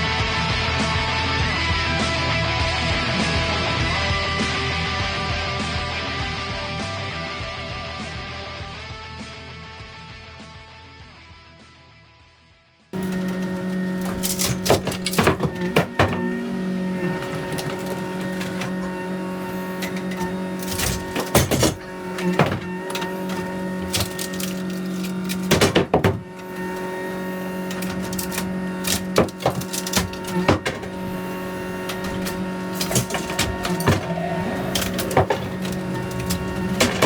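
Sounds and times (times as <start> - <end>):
demolition debris crashing: 13.0 - 37.0
excavator engine with hydraulic hum: 13.0 - 37.0.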